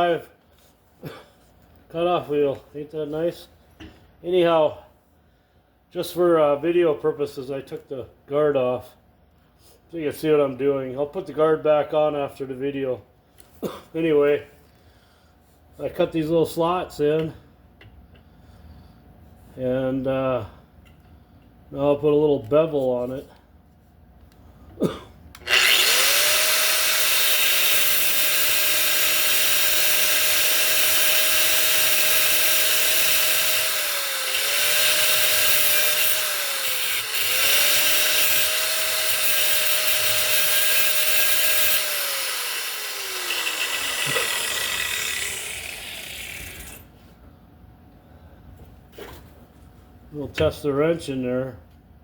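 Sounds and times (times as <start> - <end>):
cutoff wheel grinding: 25.4 - 46.9
power tool winding down: 25.4 - 46.9.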